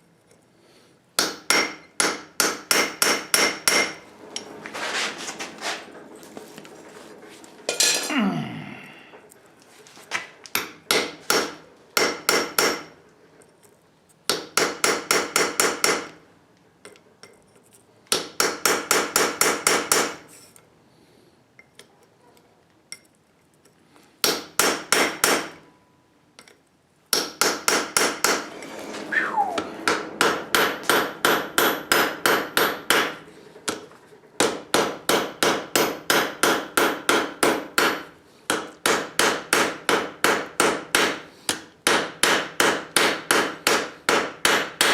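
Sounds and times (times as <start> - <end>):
hammer ringing on anvil: 1.5 - 4.0.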